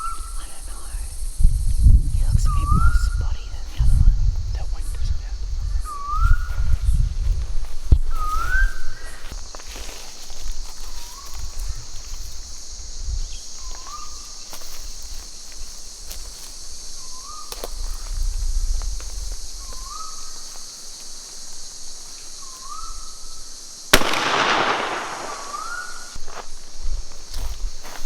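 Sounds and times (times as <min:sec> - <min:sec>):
steady high hiss: 0:00.0 - 0:28.0
bird rising whistle: 0:08.1 - 0:09.2, 0:22.4 - 0:23.2, 0:23.9 - 0:26.2
shotgun shot with echo: 0:23.9 - 0:26.2.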